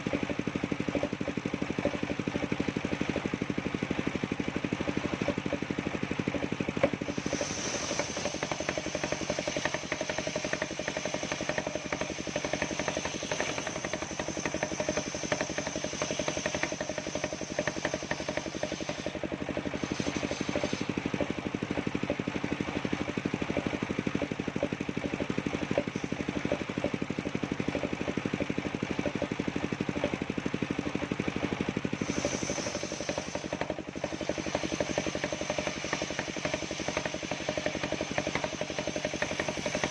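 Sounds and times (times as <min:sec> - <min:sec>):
circular sawmill running: 0:00.0 - 0:39.9
high steady whine: 0:07.0 - 0:21.0.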